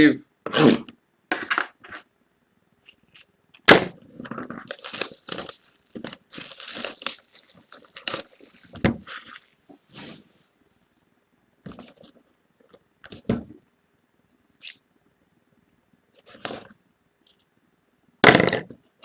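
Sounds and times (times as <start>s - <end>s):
plastic wrap crinkling: 4.5s - 9.6s.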